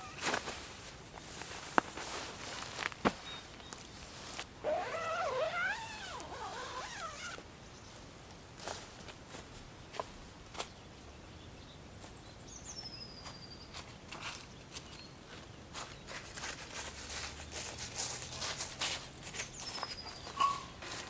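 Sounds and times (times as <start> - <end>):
footsteps crunching in snow: 0.0 - 5.4, 15.3 - 21.0.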